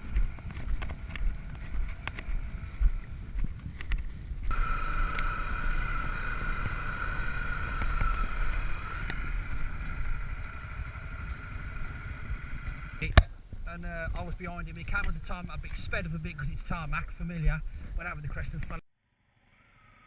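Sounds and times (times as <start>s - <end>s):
off-road vehicle engine running: 0.0s - 13.1s
wind buffeting microphone: 0.0s - 18.8s
steady high whine: 4.4s - 13.1s.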